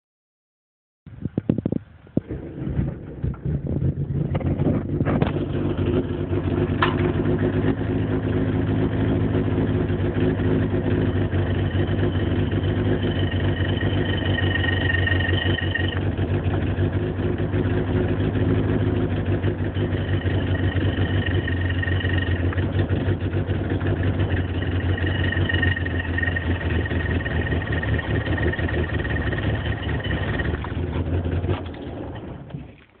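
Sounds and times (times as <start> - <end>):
car engine idling: 1.8 - 33.0
high metallic whirling whine: 10.8 - 16.5, 19.7 - 30.8.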